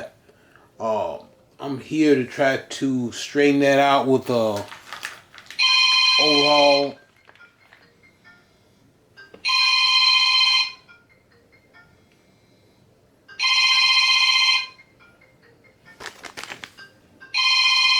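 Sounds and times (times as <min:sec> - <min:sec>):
phone ringtone ringing: 0:05.6 - 0:12.4, 0:13.2 - 0:16.0, 0:16.8 - 0:17.9.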